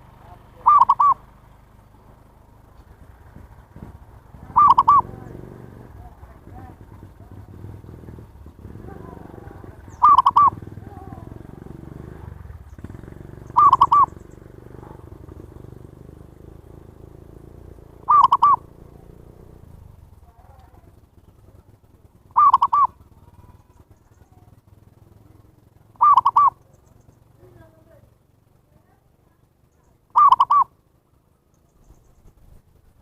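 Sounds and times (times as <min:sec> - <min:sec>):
dove cooing: 0:00.0 - 0:01.3, 0:03.8 - 0:15.7, 0:17.8 - 0:27.6, 0:29.8 - 0:30.8.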